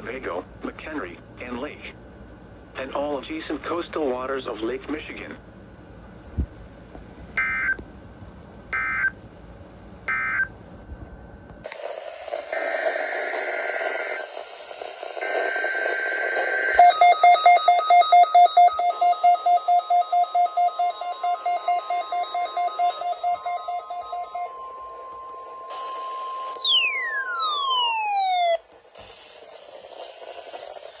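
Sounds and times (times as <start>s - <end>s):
steady warning alarm tone: 7.4s - 7.8s, 8.7s - 9.2s, 10.0s - 10.6s, 15.2s - 28.6s
weather radio alarms beeping: 7.4s - 7.8s, 8.7s - 9.2s, 10.1s - 10.6s, 15.2s - 28.6s
screechy digital header tones: 26.6s - 28.2s.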